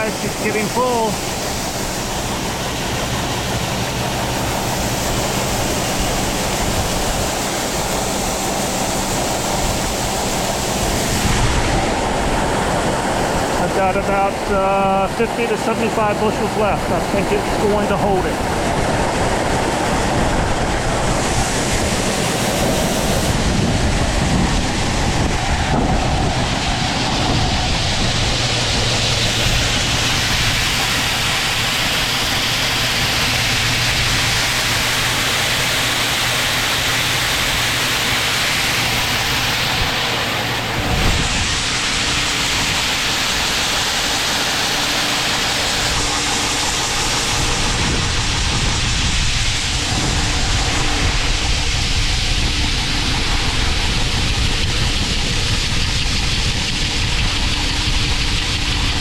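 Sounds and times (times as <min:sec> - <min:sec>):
aeration fan rushing drone: 0:00.0 - 0:59.0.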